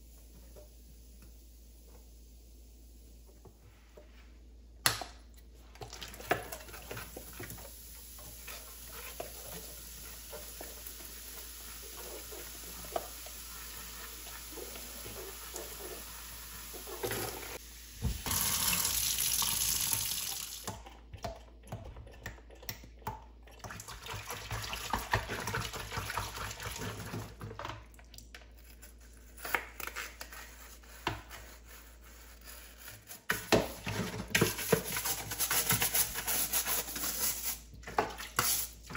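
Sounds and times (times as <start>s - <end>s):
water running from a tap: 6.5s - 20.7s.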